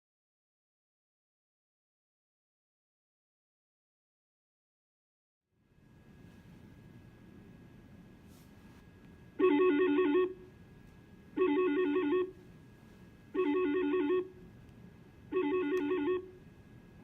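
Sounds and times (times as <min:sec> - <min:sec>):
phone ringtone warbling rings: 0:09.4 - 0:10.4, 0:11.4 - 0:12.4, 0:13.4 - 0:14.4, 0:15.3 - 0:16.4.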